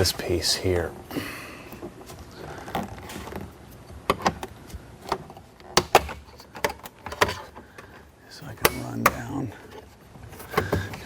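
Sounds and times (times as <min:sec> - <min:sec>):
plastic car trim clicking and snapping: 0:04.0 - 0:07.6.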